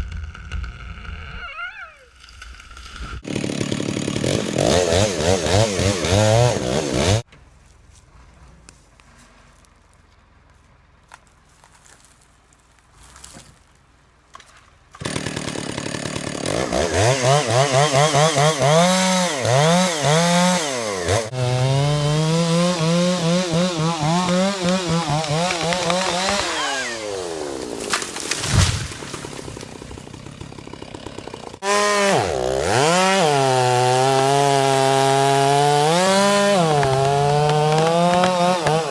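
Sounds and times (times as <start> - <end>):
chainsaw revving: 2.4 - 7.2, 15.0 - 38.9.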